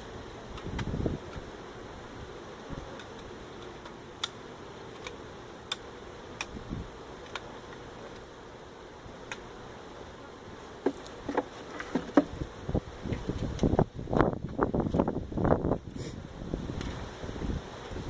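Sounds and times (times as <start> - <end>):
honey bees buzzing: 0.0 - 18.0.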